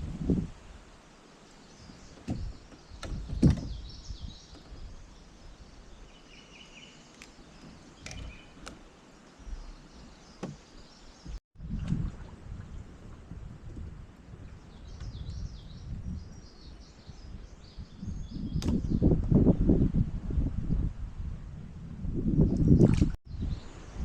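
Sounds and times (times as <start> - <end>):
hollow knocks against kayak hull: 2.0 - 3.9, 9.4 - 11.4.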